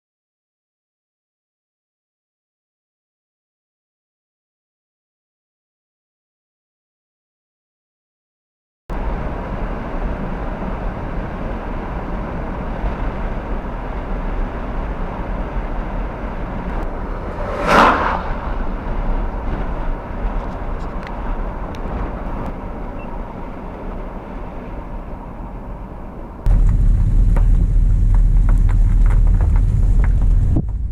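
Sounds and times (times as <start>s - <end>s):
steady rushing noise: 9.0s - 22.6s, 25.3s - 30.9s
loud swish: 16.8s - 19.8s.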